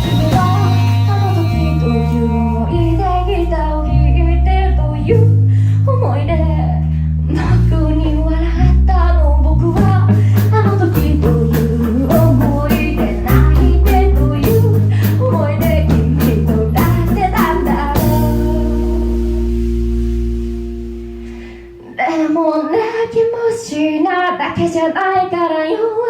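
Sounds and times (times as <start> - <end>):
rock band playing: 0.0 - 5.4, 9.8 - 22.7
cymbal crash: 19.1 - 22.3.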